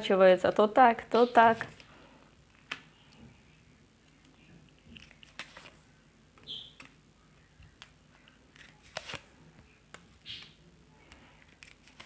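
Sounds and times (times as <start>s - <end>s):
cards rustling: 4.9s - 5.8s, 7.7s - 12.0s
cards clicking: 7.7s - 9.2s.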